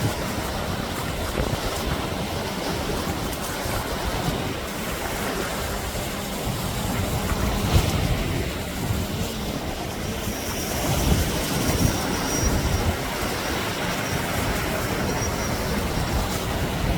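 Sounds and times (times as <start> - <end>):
sea waves breaking on beach: 0.0 - 16.9
wind rumbling on microphone: 0.0 - 16.9.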